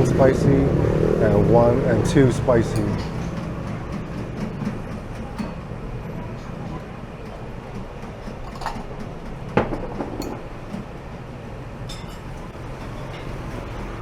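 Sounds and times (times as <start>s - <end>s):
low rumble of traffic: 0.0s - 14.0s
bowls and utensils clinking: 2.6s - 3.5s, 8.1s - 10.9s, 11.8s - 13.4s.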